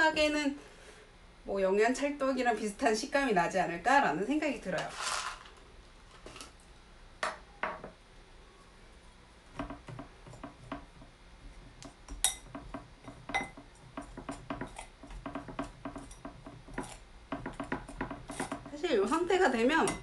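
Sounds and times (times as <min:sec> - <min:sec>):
utensil knocking in mixing bowl: 0:09.6 - 0:18.8.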